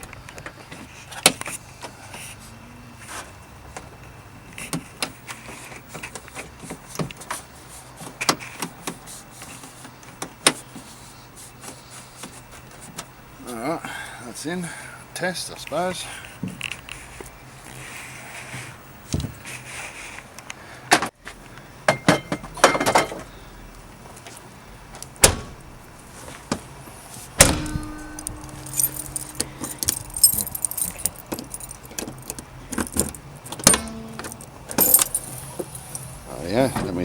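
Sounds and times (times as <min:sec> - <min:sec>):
keys jangling: 0:27.5 - 0:33.6, 0:34.2 - 0:36.3.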